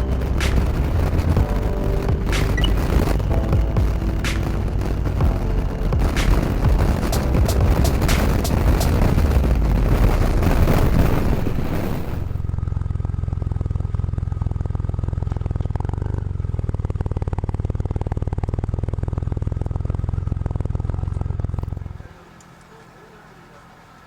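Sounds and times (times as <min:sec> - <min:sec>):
sharp clicks: 0:00.0 - 0:09.1
loud rushing noise: 0:00.0 - 0:13.0
motorcycle engine idling: 0:12.4 - 0:23.6.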